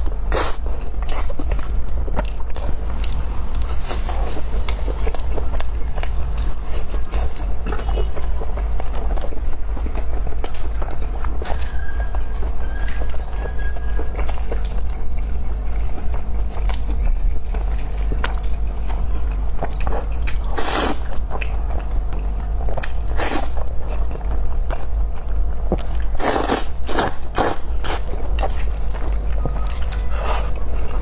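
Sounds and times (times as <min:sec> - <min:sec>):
steady low hum: 0:00.0 - 0:31.0
crunchy bites and chewing: 0:08.8 - 0:31.0.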